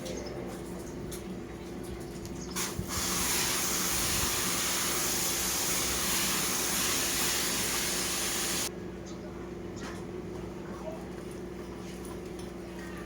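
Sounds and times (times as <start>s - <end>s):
pressure washer spray hiss: 2.6s - 8.7s
low machine hum: 5.4s - 13.0s.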